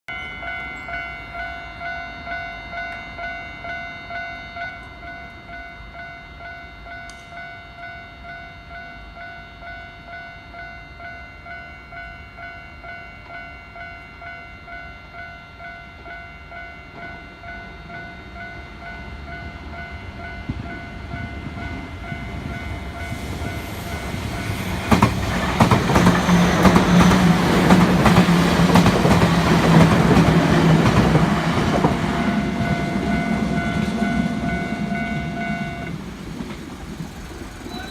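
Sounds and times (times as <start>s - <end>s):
level crossing warning bell: 0.1s - 37.9s
train passing loudly: 15.6s - 37.9s
wheels clattering over rail joints: 24.2s - 37.9s.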